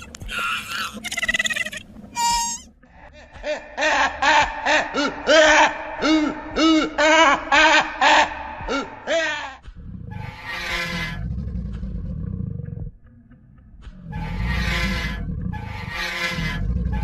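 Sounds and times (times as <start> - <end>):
dinosaur hooting calls: 14.1 - 17.0.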